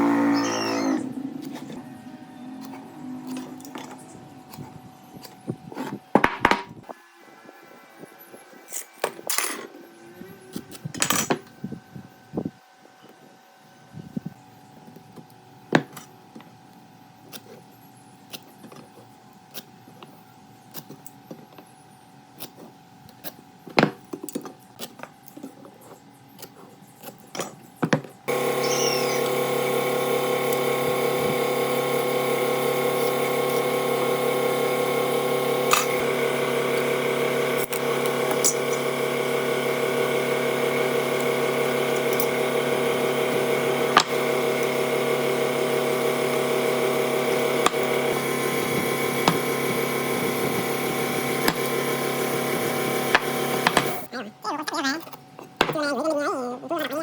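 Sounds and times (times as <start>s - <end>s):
power tool motor running: 0.0s - 4.8s, 28.3s - 54.1s.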